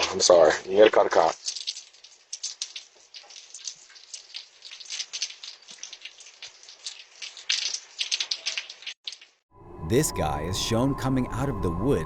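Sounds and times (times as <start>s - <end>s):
crackling patter of small ticks: 0.0s - 9.4s.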